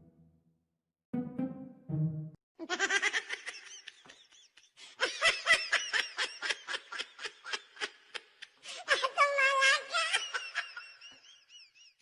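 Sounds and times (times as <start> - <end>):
high-pitched laughter: 2.6 - 8.3, 8.9 - 12.0.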